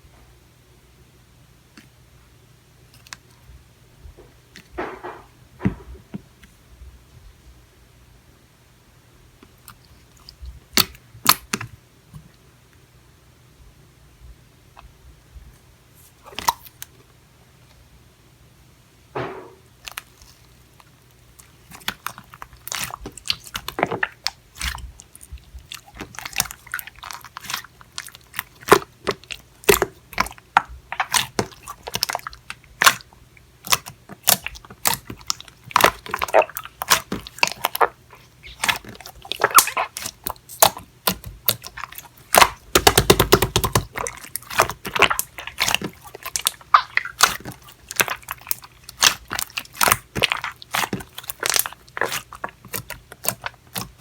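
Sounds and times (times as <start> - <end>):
slime clicking and popping: 10.8 - 11.7, 25.8 - 54.0.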